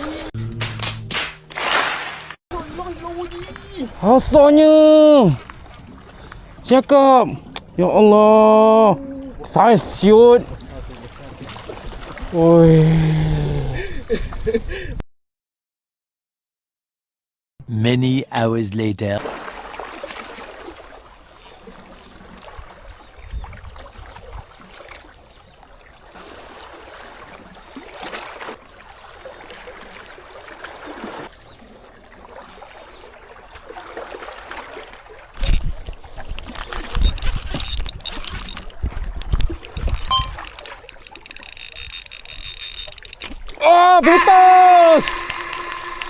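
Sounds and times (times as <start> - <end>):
water sloshing and trickling: 2.5 - 7.8, 8.8 - 12.6, 19.2 - 43.6.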